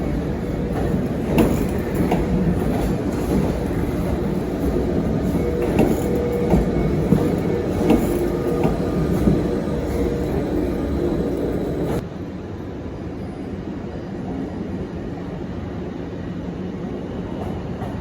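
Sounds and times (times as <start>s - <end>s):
train wheels clicking over rail joints: 0.0s - 12.0s
train rumbling: 0.0s - 12.4s.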